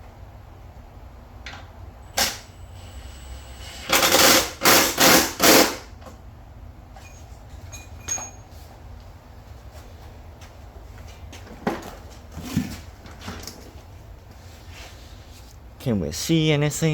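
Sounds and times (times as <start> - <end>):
impact wrench rattling bursts: 2.2 - 6.0.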